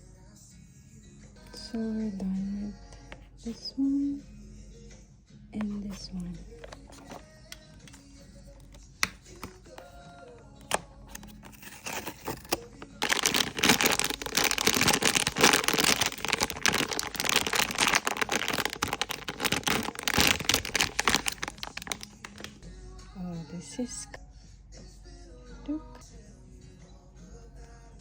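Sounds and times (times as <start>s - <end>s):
packaging wrapper crinkling: 6.6s - 7.2s, 10.6s - 22.6s.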